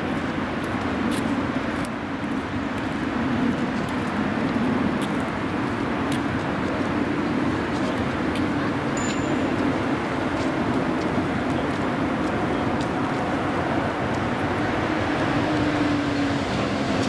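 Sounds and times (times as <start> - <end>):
freight train rumbling past: 7.0 - 17.0.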